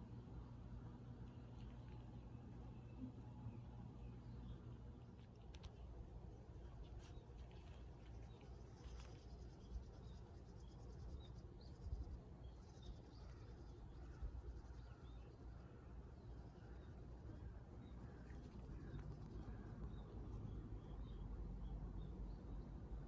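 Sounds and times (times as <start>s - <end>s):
low steady rumble: 0.0s - 23.0s
faint bird chirps: 6.7s - 22.8s.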